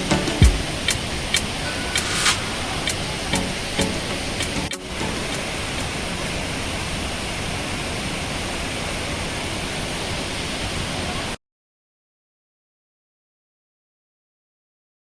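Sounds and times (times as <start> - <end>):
waterfall roaring: 0.0 - 11.4.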